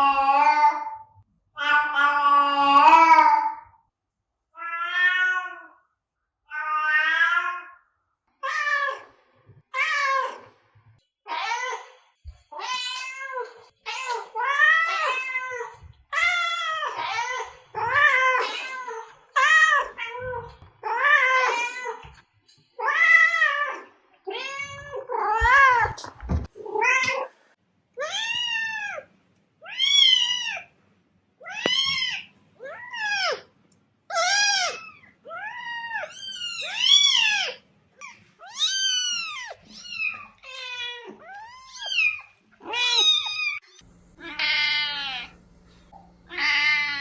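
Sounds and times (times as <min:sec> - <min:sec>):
cat meowing: 0:34.1 - 0:45.4, 0:46.3 - 0:47.0.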